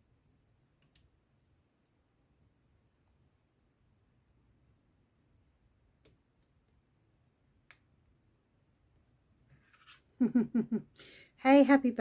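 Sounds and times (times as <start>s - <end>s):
woman speaking: 11.4s - 12.0s.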